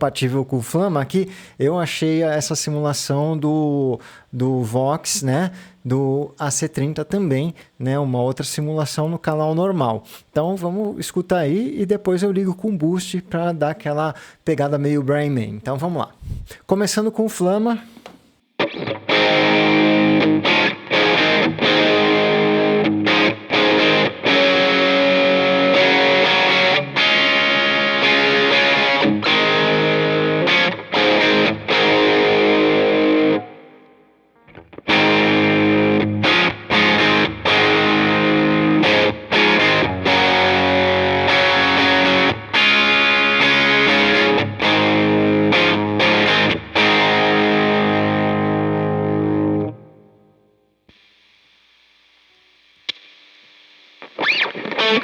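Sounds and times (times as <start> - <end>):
overdriven electric guitar: 18.6 - 50.6, 52.2 - 55.0.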